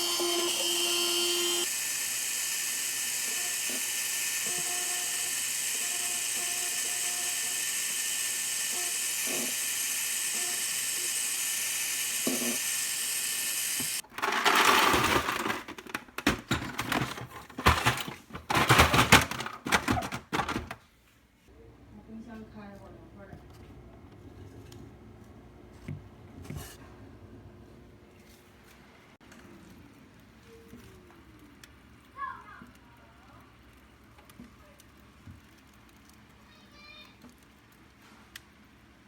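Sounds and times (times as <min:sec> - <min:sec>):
small electric motor whining: 0:00.0 - 0:14.0.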